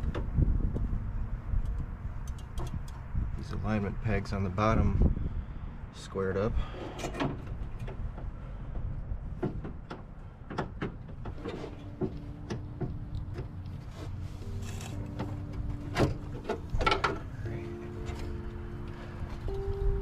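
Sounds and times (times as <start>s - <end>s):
knocks and clicks of tools: 14.8s - 17.3s.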